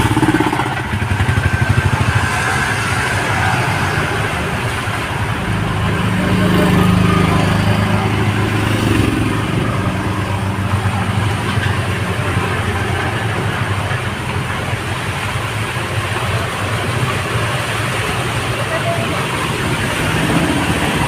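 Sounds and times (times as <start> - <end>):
engine humming: 0.0 - 21.0
rain falling: 0.0 - 21.0.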